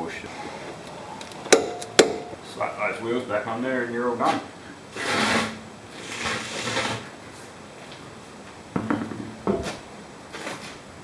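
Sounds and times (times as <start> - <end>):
sharp knocks: 1.5 - 2.4, 8.8 - 9.8.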